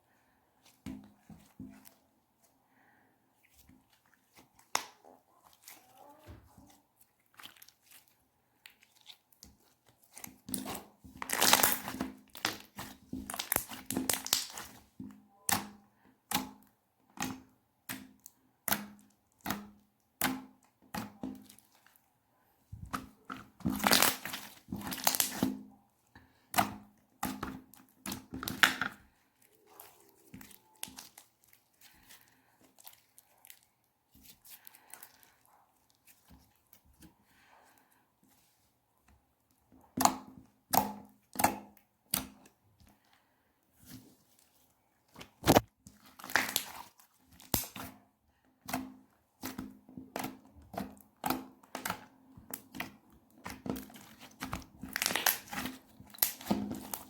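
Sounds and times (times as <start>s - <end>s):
slime crackling and popping: 8.7s - 14.8s, 23.7s - 25.5s, 29.7s - 33.7s, 45.2s - 47.9s, 51.2s - 57.0s.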